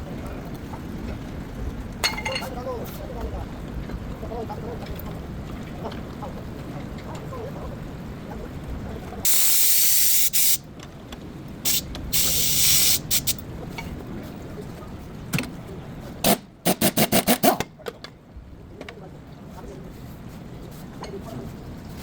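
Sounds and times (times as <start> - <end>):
spraying hiss: 9.3 - 10.6, 11.7 - 13.4.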